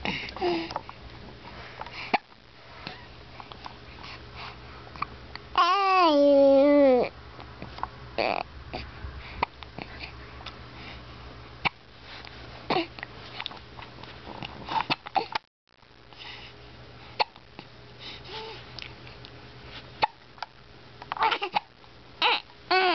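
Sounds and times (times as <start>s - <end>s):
baby fussing babble: 5.6s - 7.1s, 21.2s - 22.9s
baby hiccuping: 21.1s - 22.4s.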